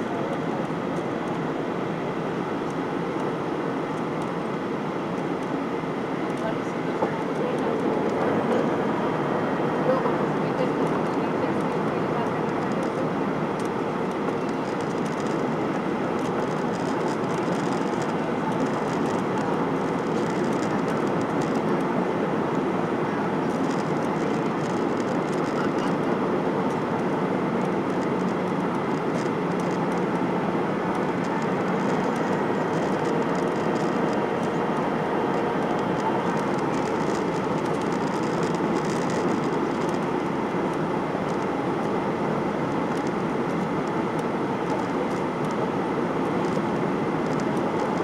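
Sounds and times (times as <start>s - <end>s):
airplane cabin noise: 0.0s - 48.0s.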